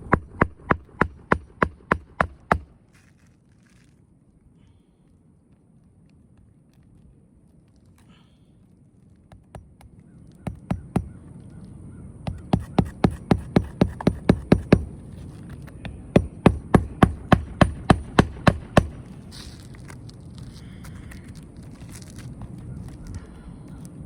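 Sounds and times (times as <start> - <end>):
hammer driving roofing nails: 0.0 - 2.7, 9.3 - 11.2, 12.2 - 19.2.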